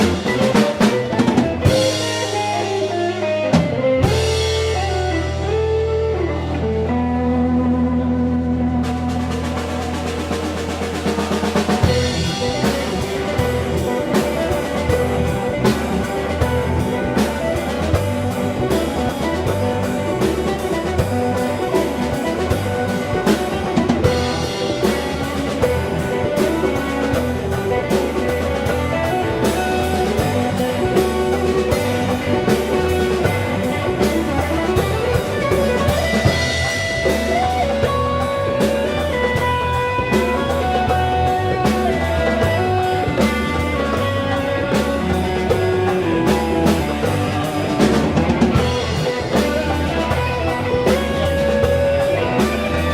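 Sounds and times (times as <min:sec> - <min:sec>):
blues guitar: 0:00.0 - 0:52.9
drum kit: 0:00.0 - 0:52.9.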